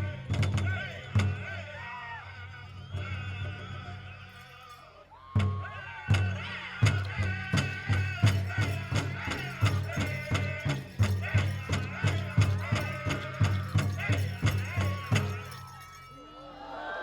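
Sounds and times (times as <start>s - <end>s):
big drum beats: 0.0s - 1.6s, 5.4s - 16.0s
group singing: 5.8s - 15.9s.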